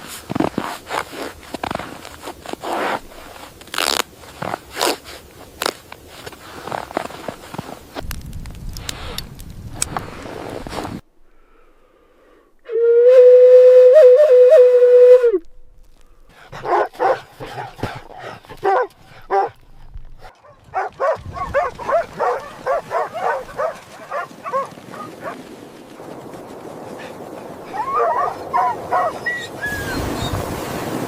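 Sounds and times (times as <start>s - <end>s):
wolf howling: 16.5s - 19.6s, 20.8s - 25.4s, 27.6s - 30.3s
wolf yips and barks: 16.5s - 25.4s, 27.6s - 30.5s.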